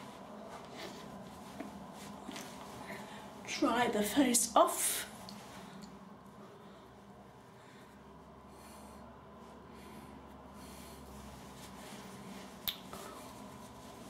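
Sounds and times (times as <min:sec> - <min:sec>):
towel rustling on face: 0:00.0 - 0:03.4, 0:11.1 - 0:14.0.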